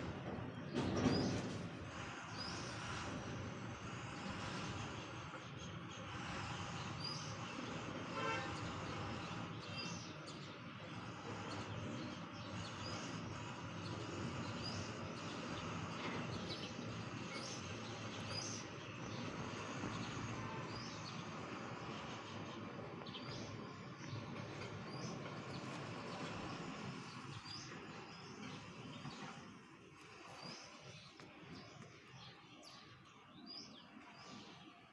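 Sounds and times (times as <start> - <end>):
distant traffic: 0.0 - 34.9
small birds chirping: 0.5 - 34.9
vehicle horn toot: 8.2 - 8.6.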